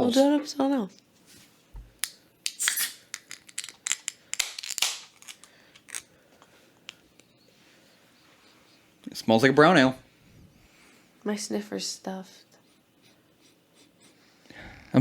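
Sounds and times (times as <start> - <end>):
can opening hiss: 2.0 - 6.0
beer can clicks and scratches: 2.5 - 6.0.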